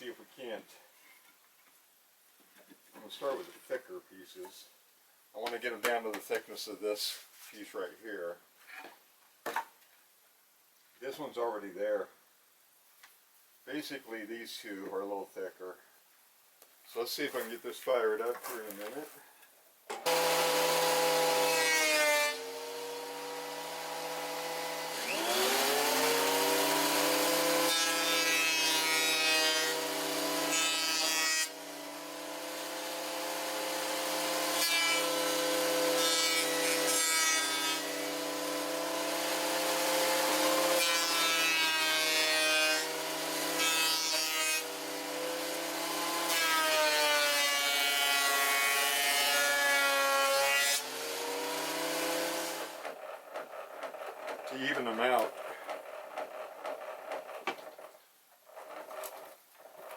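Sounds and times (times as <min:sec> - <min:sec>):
electric wood planer whining: 0:20.0 - 0:54.5.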